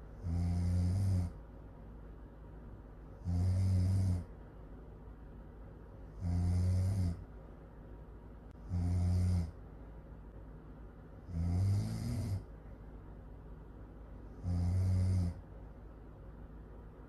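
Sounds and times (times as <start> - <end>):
loud snoring: 0.2 - 1.4, 3.2 - 4.3, 6.1 - 7.2, 8.6 - 9.6, 11.3 - 12.5, 14.4 - 15.4.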